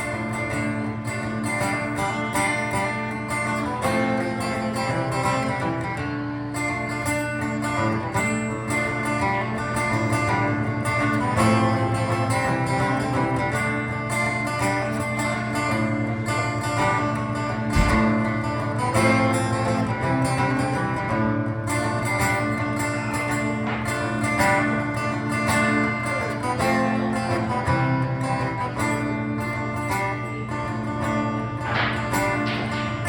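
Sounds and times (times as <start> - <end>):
acoustic guitar strumming: 0.0 - 33.0
low thump: 17.7 - 18.5.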